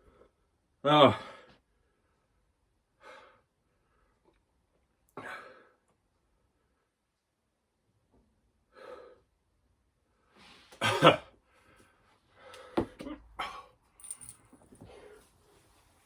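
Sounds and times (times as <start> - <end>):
man breathing heavily and sighing: 1.0 - 2.0, 11.4 - 15.4.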